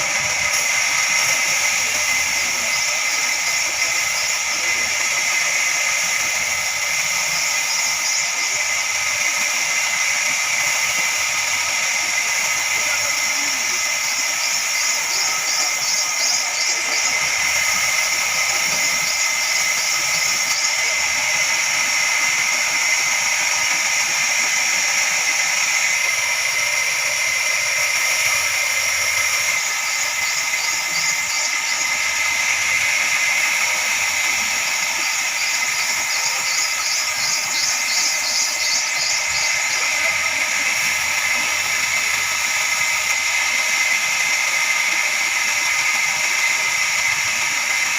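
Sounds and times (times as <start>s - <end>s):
band saw cutting log: 0.0s - 47.9s.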